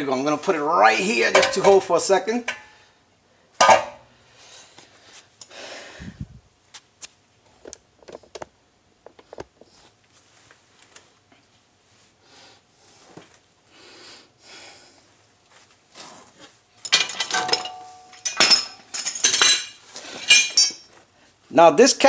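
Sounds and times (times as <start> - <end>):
metal tools clinking: 0.4 - 2.7, 3.6 - 4.0, 16.8 - 21.0.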